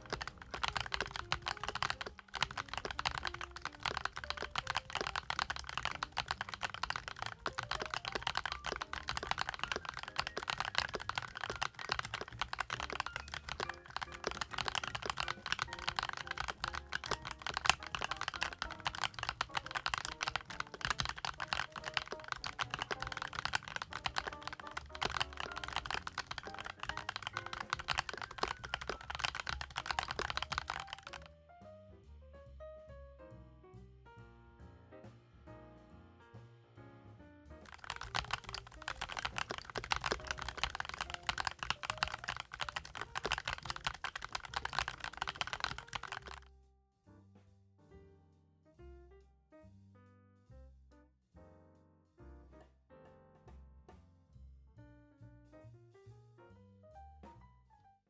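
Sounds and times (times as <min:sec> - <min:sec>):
fast typing on mechanical keyboard: 0:00.0 - 0:31.3, 0:37.7 - 0:46.4.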